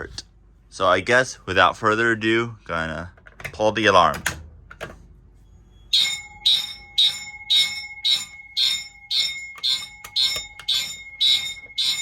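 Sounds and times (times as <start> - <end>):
fire alarm horns and bell pulsing: 5.6 - 12.0.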